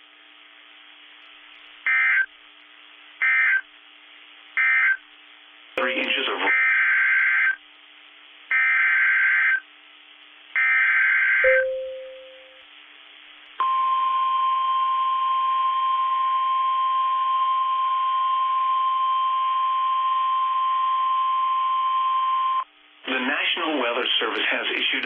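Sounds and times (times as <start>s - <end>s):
steady warning alarm tone: 8.5s - 9.6s, 10.6s - 12.6s.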